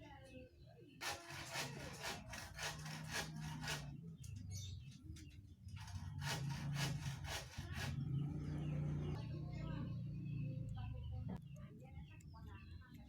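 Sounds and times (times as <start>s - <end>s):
hand saw cutting: 1.0s - 4.0s, 5.8s - 8.2s.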